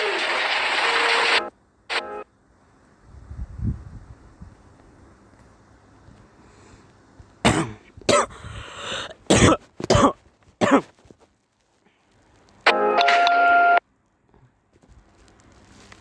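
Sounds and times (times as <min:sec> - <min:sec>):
person coughing harshly: 0:07.4 - 0:08.4, 0:09.3 - 0:11.0.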